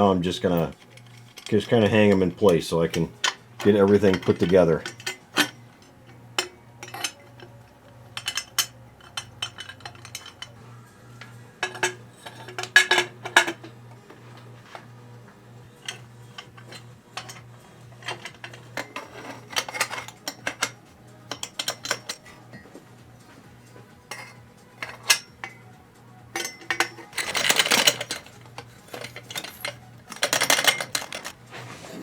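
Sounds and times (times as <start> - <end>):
metal parts clinking: 0.0 - 14.9, 15.7 - 31.4.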